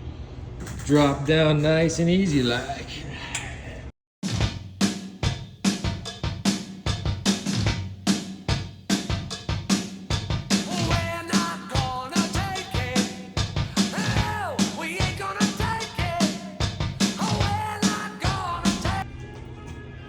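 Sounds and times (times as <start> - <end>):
rock music: 4.2 - 19.0
steady drum beat: 4.2 - 19.0.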